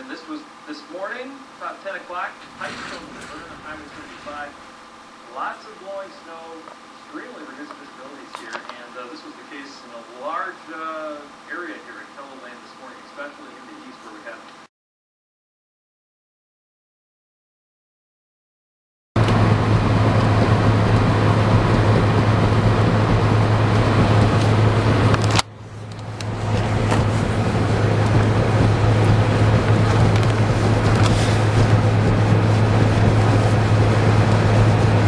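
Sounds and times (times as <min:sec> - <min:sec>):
low engine drone: 0:01.4 - 0:08.4, 0:19.2 - 0:35.0
road and wind noise: 0:02.4 - 0:05.3, 0:19.2 - 0:35.0.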